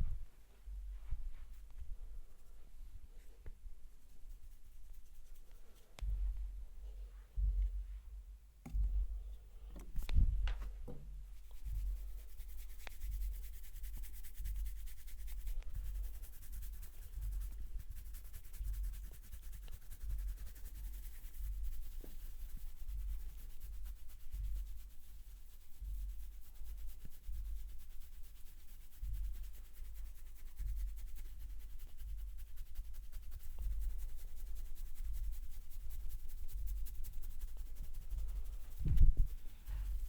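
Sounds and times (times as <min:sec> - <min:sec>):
soft low thumps: 0:00.0 - 0:03.7, 0:06.0 - 0:12.2, 0:38.2 - 0:40.0
hands rubbing scalp and hair: 0:00.9 - 0:07.9, 0:08.7 - 0:40.0
sharp clicks and knocks: 0:08.6 - 0:11.1.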